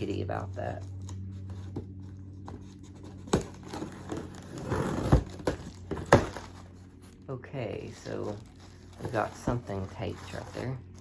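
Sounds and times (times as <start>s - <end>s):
packaging rustling: 0.0s - 11.0s.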